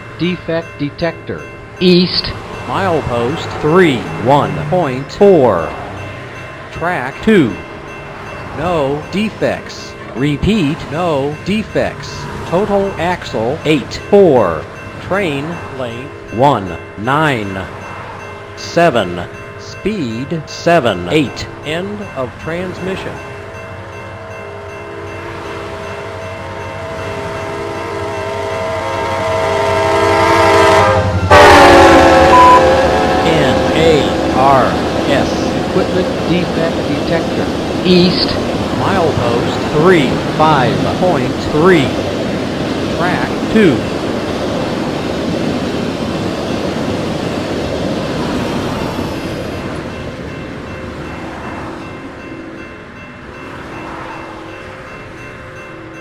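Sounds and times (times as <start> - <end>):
steel wheels rolling on rail: 0.0 - 56.0
train rumbling: 0.0 - 56.0
train horn chord: 26.1 - 38.6.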